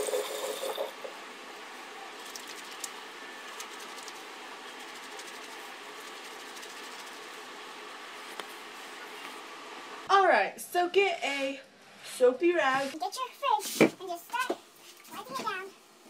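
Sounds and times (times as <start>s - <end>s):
water running from a tap: 0.0s - 0.9s
steady background hum: 0.0s - 16.0s.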